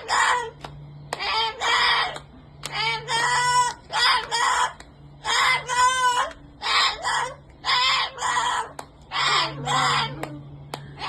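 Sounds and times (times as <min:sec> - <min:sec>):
cockatoo squawking: 0:00.0 - 0:00.6, 0:01.2 - 0:10.3.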